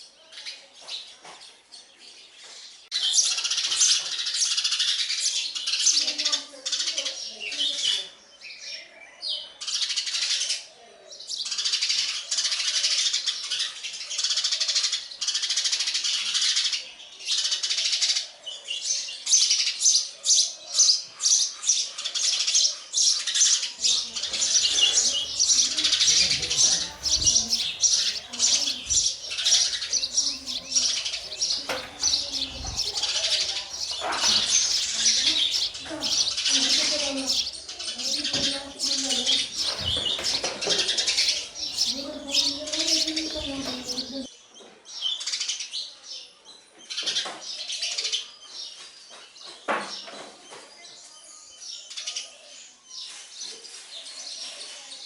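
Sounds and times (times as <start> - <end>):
sparrows chirping rapidly: 2.9 - 44.3.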